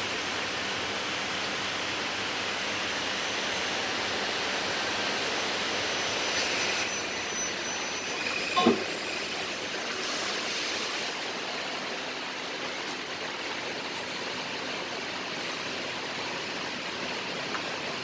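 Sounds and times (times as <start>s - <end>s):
thin high-pitched whine: 3.2s - 11.1s.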